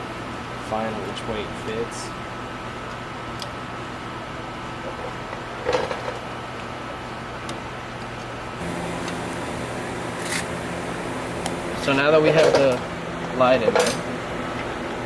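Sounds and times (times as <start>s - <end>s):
steady hum: 8.4s - 15.0s.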